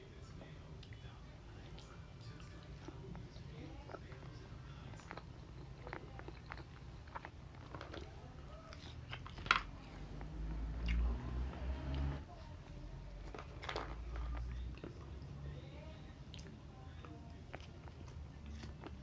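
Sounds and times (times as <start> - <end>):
sharp crunch of food: 4.9 - 11.2.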